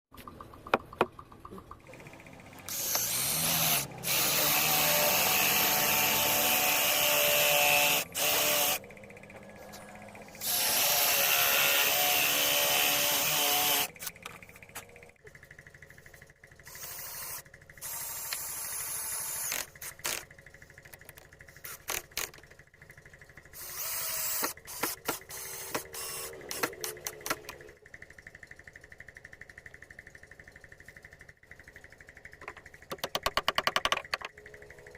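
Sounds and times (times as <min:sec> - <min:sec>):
knocks and clicks: 0:00.1 - 0:02.0, 0:32.4 - 0:34.4
power tool cutting wood: 0:02.0 - 0:08.8, 0:09.7 - 0:14.1, 0:23.6 - 0:27.6.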